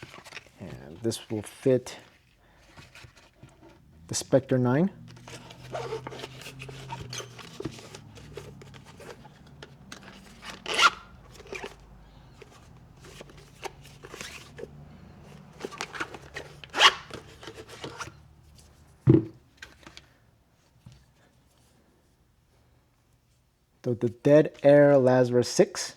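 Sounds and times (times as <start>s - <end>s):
fabric pouch rustling and scraping: 0.0s - 1.0s, 5.0s - 18.2s.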